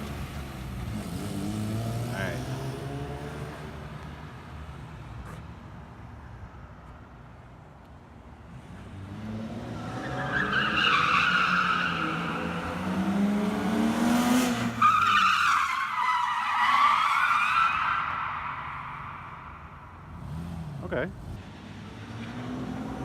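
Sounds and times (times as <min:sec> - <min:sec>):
engine revving: 0:00.8 - 0:03.9, 0:12.0 - 0:14.8.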